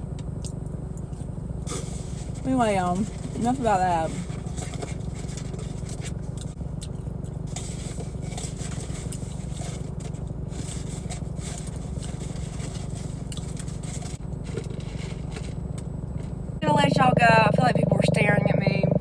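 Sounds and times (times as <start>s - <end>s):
car engine idling rumble: 0.0s - 19.0s
light scraping and rustling: 1.1s - 6.6s, 7.2s - 16.4s.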